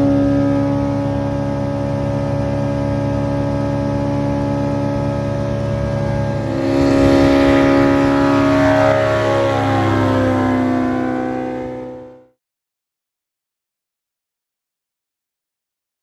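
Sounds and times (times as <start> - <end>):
light aircraft engine droning: 0.0 - 12.3.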